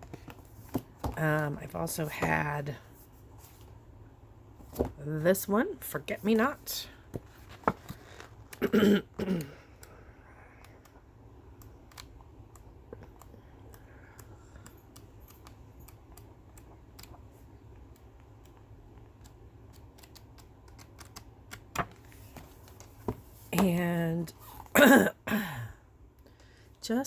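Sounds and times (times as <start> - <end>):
paper clicks and rustles: 7.2 - 8.6.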